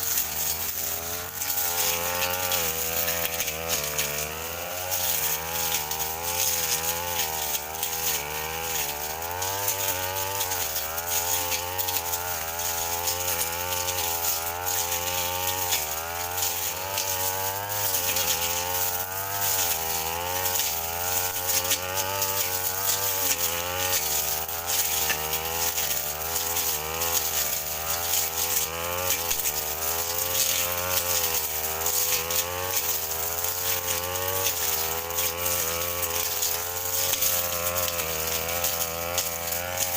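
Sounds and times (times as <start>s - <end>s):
brush cutter cutting grass: 0.0s - 39.9s.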